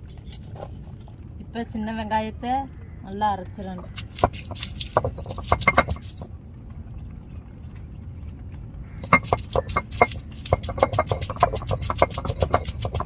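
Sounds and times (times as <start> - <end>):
stone roller knocking on stone slab: 3.8 - 6.3, 9.0 - 13.0.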